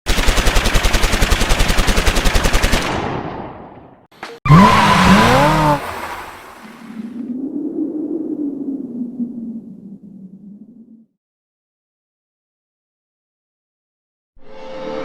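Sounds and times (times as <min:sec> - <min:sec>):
rapid machine-gun-like clicks: 0:00.1 - 0:03.0
loud rising and falling tone: 0:04.5 - 0:05.8.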